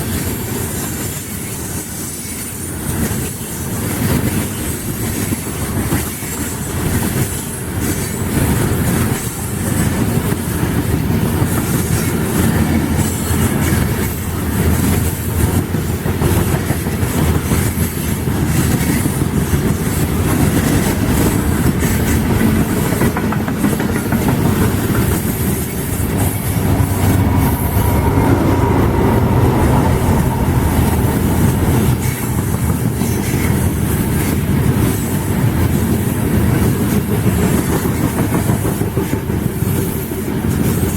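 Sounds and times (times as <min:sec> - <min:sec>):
freight train wheels clattering: 0:00.0 - 0:40.9
heavy low train rumble: 0:00.0 - 0:40.9.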